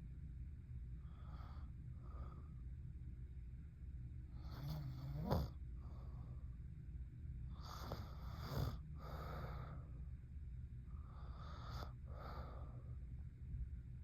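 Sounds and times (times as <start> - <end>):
steady low hum: 0.0 - 14.0
woman snoring: 4.4 - 5.6, 7.6 - 8.8.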